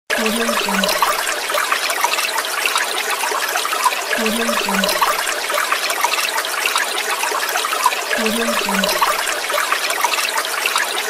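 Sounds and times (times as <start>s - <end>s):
water trickling and splashing in bathtub: 0.1s - 11.0s.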